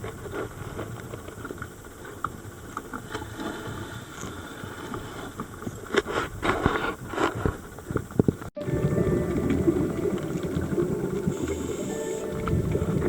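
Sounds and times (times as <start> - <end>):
diver's exhaled bubbles gushing: 8.6 - 13.0
low underwater rumble: 8.6 - 13.0.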